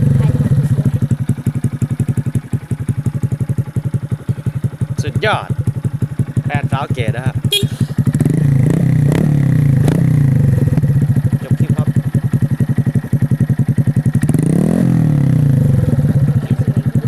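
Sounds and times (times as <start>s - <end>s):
motorcycle engine idling and revving: 0.0s - 17.0s.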